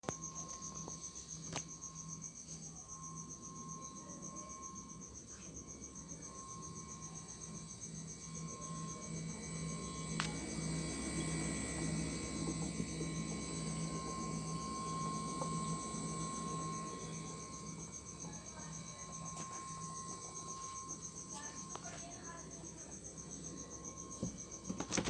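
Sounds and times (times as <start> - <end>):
high pulsing whistle: 0.0 - 25.0
steady lower tone: 0.0 - 25.0
low compressor hum: 0.1 - 25.0.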